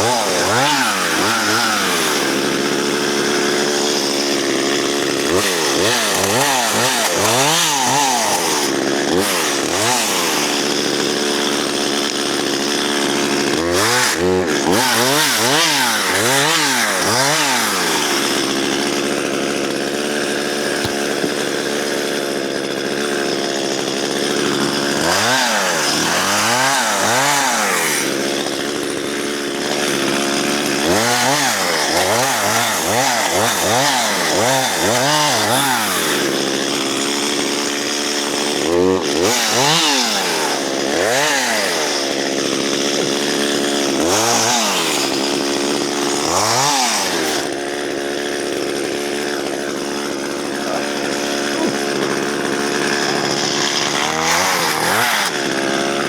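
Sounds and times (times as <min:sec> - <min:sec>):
chainsaw cutting logs: 0:00.0 - 0:56.0.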